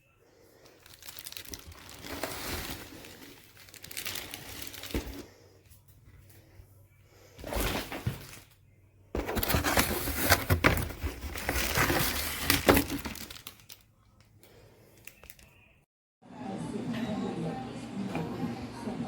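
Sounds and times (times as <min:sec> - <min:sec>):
crinkling and clattering of handling: 0:00.6 - 0:06.6, 0:07.4 - 0:15.5.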